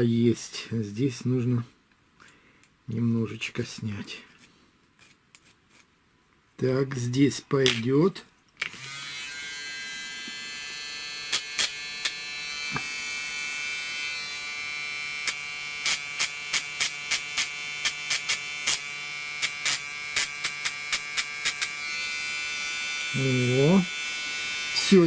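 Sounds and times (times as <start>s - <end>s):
rotary tool whining: 8.6s - 25.0s.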